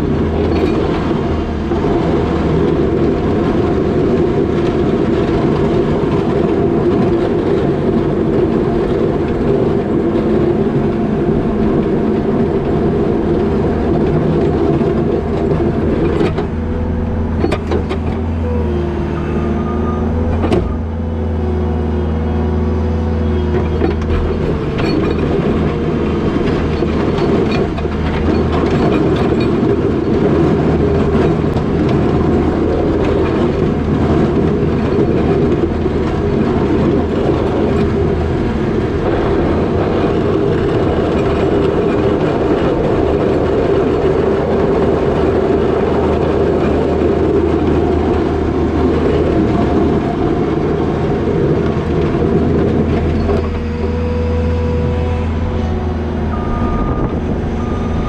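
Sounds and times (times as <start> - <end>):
diesel engine running hard: 0.0 - 58.0.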